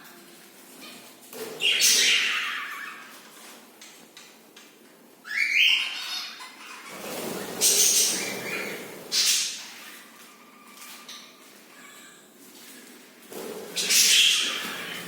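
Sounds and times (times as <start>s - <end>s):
pet birds calling: 0.8s - 3.4s, 5.2s - 12.1s, 13.7s - 15.0s.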